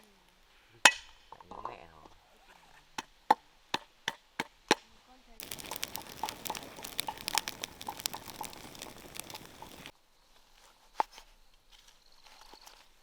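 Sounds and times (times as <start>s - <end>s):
fast crackling and crunching: 5.4s - 9.9s.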